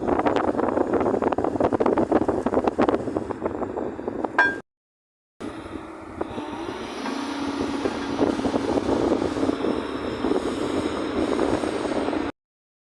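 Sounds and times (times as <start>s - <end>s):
excavator engine running: 5.4s - 12.3s.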